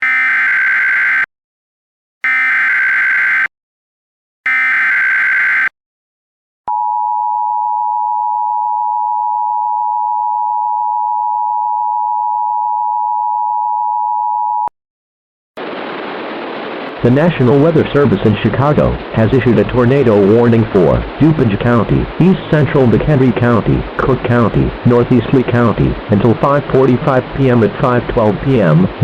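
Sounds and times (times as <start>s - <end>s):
data header bursts: 20.2s - 29.0s.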